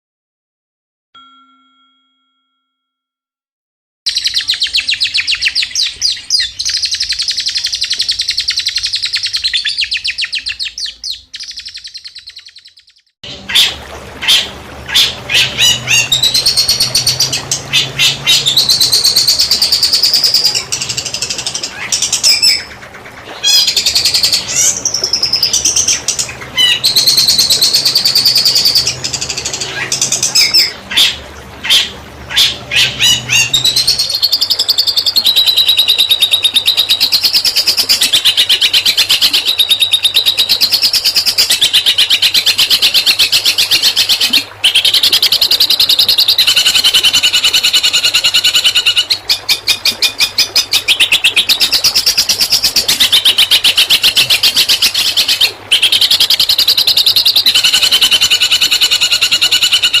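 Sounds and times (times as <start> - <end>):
songbird trilling song: 4.1 - 22.8.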